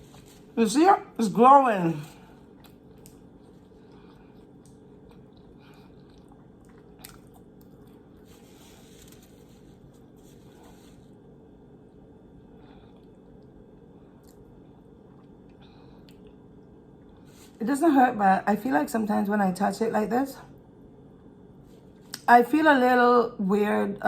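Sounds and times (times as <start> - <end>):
soft rustle: 0.0 - 0.6, 8.2 - 11.2
low steady room hum: 0.0 - 24.0.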